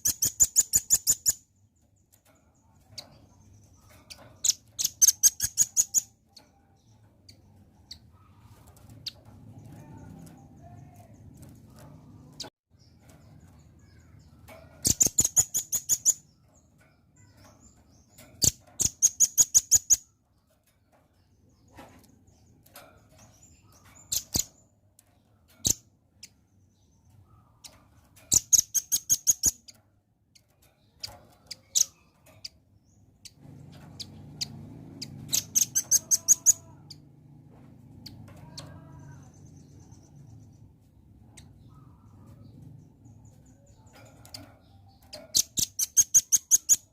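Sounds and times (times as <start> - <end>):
bird chipping calls: 3.4 - 9.2, 33.2 - 37.1, 43.6 - 46.9.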